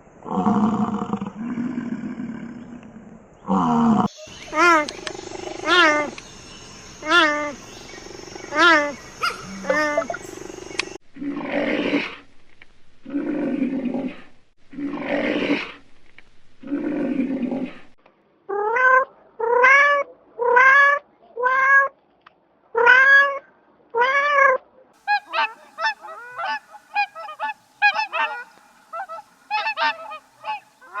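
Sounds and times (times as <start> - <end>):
harsh animal calls: 0.3 - 12.3, 13.0 - 15.9, 24.0 - 31.0
honking calls: 4.1 - 11.0, 25.0 - 31.0
short chirping calls: 4.1 - 11.0.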